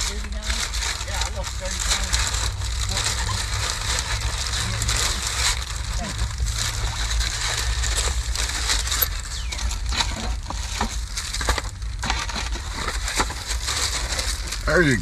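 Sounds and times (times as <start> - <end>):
food packaging crinkling: 0.0 - 15.0
steady low rumble: 0.0 - 15.0.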